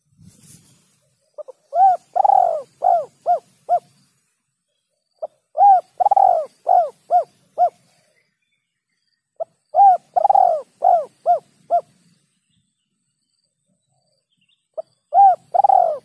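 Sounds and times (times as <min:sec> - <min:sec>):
dove cooing: 0:01.4 - 0:03.9, 0:05.2 - 0:07.8, 0:09.4 - 0:12.0, 0:14.8 - 0:16.0.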